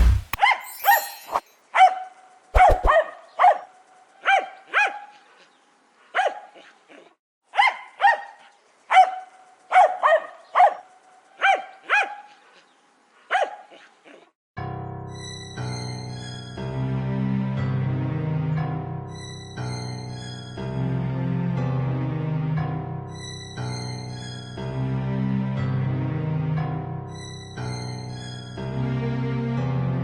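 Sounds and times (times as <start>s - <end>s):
small dog barking sharply: 1.8s - 5.1s, 7.6s - 12.3s, 13.3s - 13.7s.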